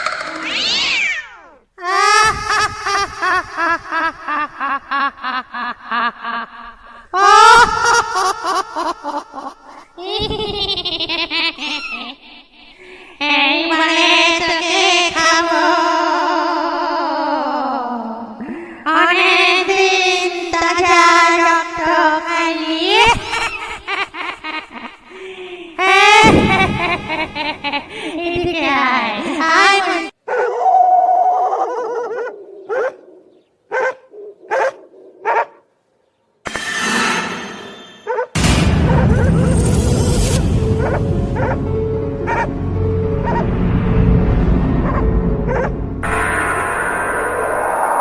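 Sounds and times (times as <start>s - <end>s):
high-pitched cackling laugh: 1.8s - 13.7s, 22.9s - 25.2s, 25.8s - 30.0s.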